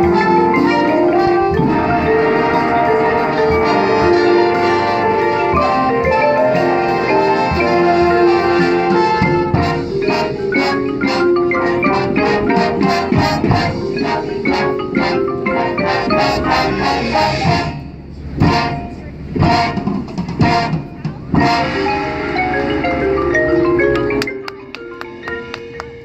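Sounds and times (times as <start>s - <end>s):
mallet keyboards and drums: 0.0s - 26.0s
marching band wind and brass chords: 0.0s - 26.0s.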